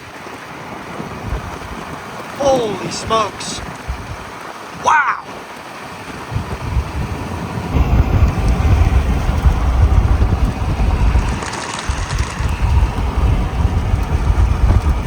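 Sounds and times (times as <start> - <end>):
wind buffeting on microphone: 0.7 - 2.3, 3.6 - 15.0
moving car rush: 6.4 - 15.0.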